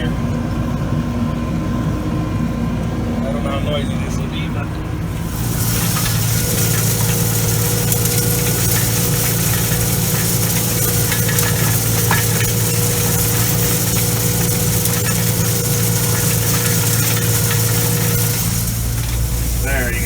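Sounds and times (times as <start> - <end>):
tractor engine running: 0.0 - 20.0
faint steady whine: 3.2 - 20.0
even hiss: 5.1 - 20.0.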